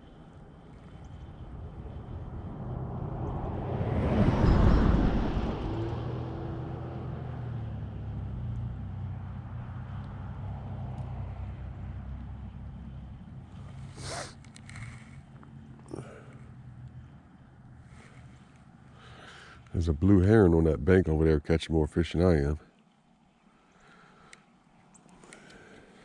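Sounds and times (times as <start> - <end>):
low engine hum: 0.0 - 26.0
vehicle driving past: 0.9 - 20.0.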